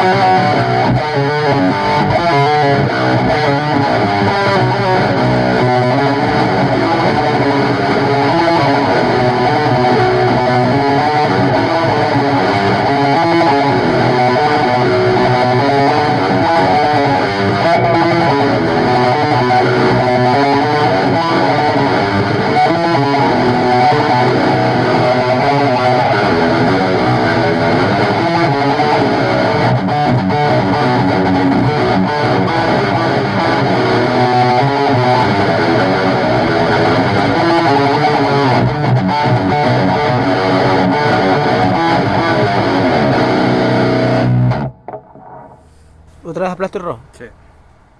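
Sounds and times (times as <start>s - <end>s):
bass guitar: 0.0s - 47.9s
distorted electric guitar riff: 0.0s - 47.9s.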